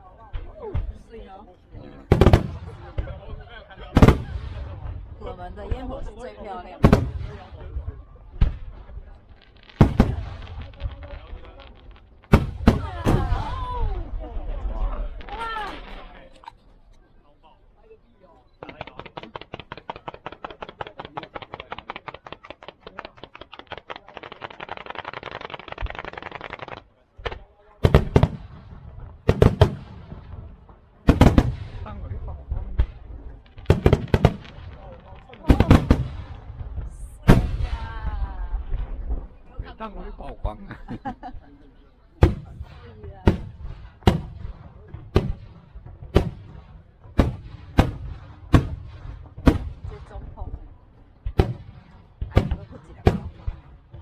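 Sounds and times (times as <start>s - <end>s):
loud firework bangs: 2.0s - 6.1s, 6.8s - 14.2s, 18.8s - 39.5s, 42.2s - 54.0s
firework crackle: 3.9s - 16.4s, 18.6s - 40.3s.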